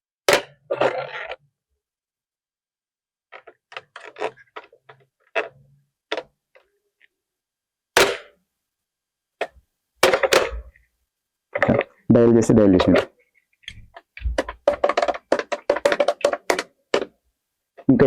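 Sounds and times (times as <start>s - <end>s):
small plastic clicks and knocks: 12.8s - 17.2s.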